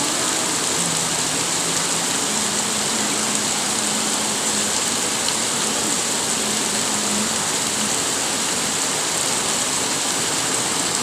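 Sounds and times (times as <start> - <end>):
heavy rain pouring: 0.0 - 11.0.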